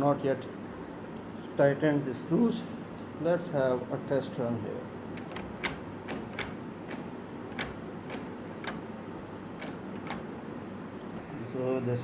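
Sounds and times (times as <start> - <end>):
door latch clicking: 5.2 - 8.9, 9.6 - 10.3.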